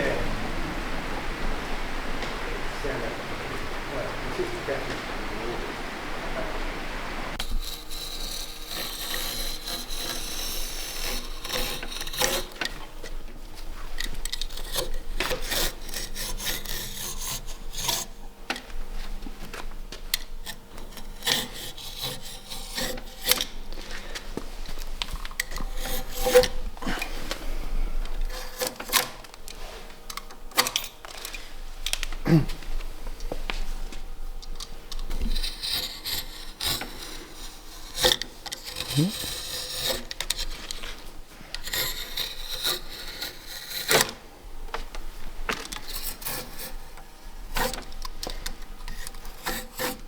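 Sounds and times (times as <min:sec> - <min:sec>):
rubbing and scraping on wood: 0:00.0 - 0:18.2, 0:19.0 - 0:30.0, 0:35.0 - 0:44.2.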